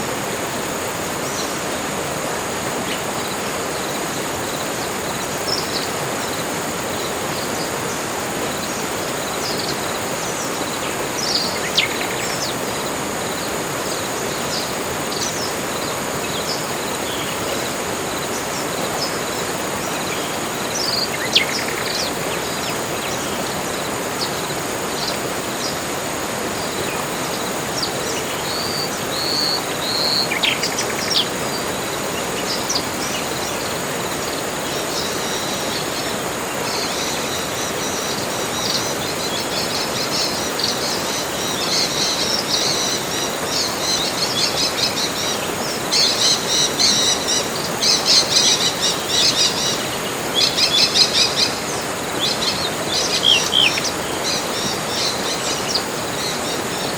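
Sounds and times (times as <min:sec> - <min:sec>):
steady background hiss: 0:00.0 - 0:56.9
birds chirping in fast trills: 0:00.2 - 0:56.9.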